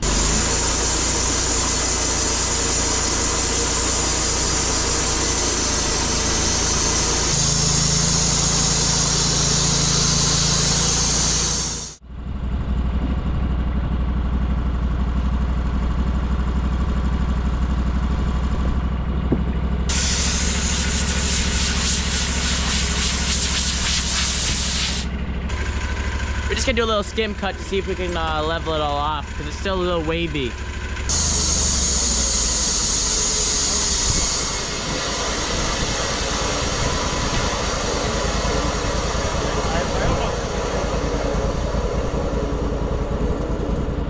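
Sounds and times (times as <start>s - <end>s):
band blade cutting log: 0.0s - 12.0s, 19.9s - 25.1s, 31.1s - 42.5s
sawmill engine running: 0.0s - 44.0s.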